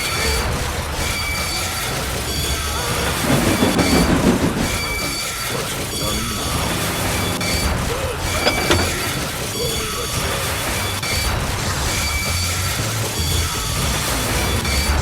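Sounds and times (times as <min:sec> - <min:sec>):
mechanical clanking and rattling: 0:02.8 - 0:09.8.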